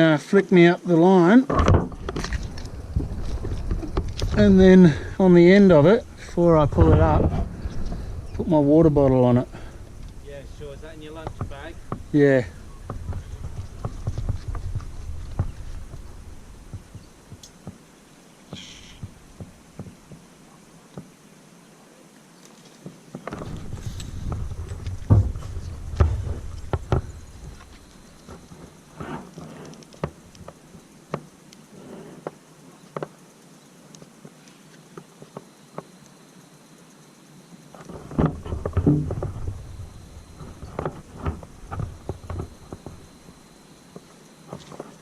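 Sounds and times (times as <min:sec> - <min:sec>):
soft knocks of climbing gear: 0:01.5 - 0:05.2, 0:09.0 - 0:17.8, 0:43.9 - 0:45.0
rope rustling: 0:01.8 - 0:08.3, 0:09.4 - 0:17.7, 0:22.4 - 0:30.7.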